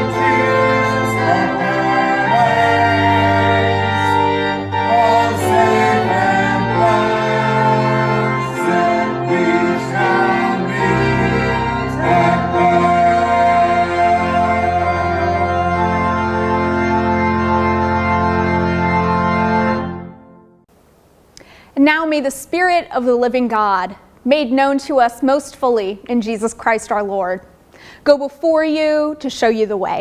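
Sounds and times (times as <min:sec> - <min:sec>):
voices singing a hymn: 0:00.0 - 0:18.9
organ playing chords: 0:00.0 - 0:20.7.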